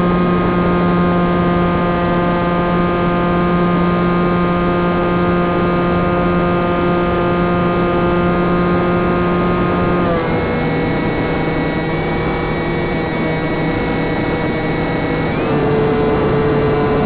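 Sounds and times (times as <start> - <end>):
electric motor spinning propeller: 8.9 - 17.0.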